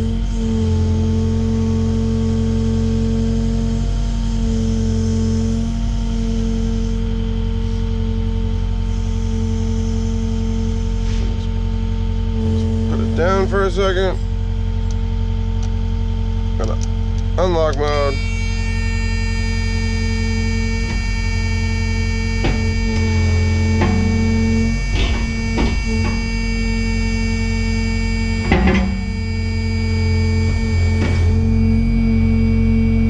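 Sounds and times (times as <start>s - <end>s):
diesel engine running: 0.0s - 33.0s
hydraulic whine: 0.0s - 33.0s
clunks: 20.7s - 32.2s.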